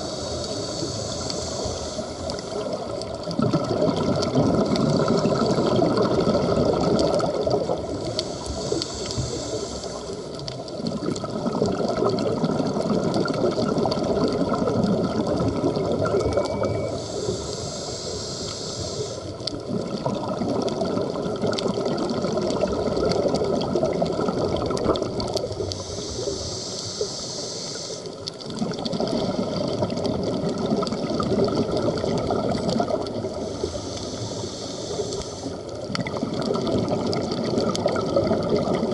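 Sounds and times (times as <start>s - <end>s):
regulator hiss on inhale: 0.0s - 3.3s, 4.7s - 10.8s, 16.8s - 19.7s, 25.0s - 30.1s, 32.8s - 36.0s
bubbling rush on exhale: 0.0s - 38.9s.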